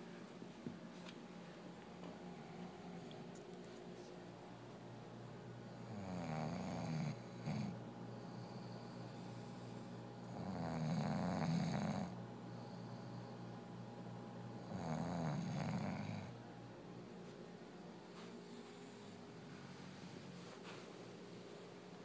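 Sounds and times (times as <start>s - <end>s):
person snoring: 5.8s - 9.0s, 10.3s - 12.2s, 14.7s - 16.4s.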